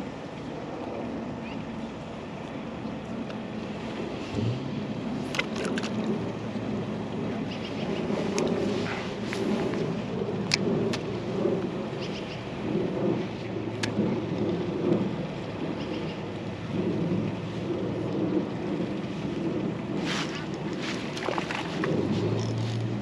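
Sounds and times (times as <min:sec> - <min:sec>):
low rumble: 0:00.0 - 0:23.0
rain falling: 0:00.0 - 0:23.0.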